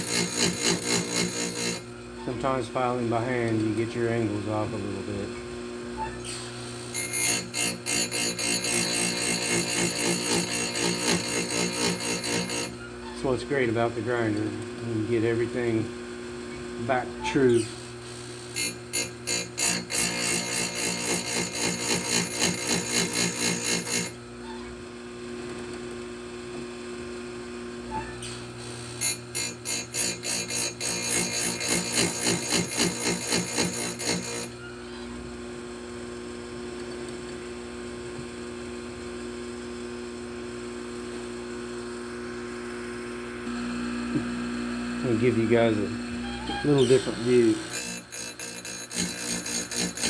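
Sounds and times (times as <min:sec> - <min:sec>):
stone grinding chainsaw tooth: 0:00.0 - 0:01.8, 0:07.0 - 0:12.7, 0:18.6 - 0:24.1, 0:29.1 - 0:34.6, 0:46.6 - 0:50.0
grinder motor humming: 0:00.0 - 0:24.3, 0:28.4 - 0:35.2, 0:39.8 - 0:50.0.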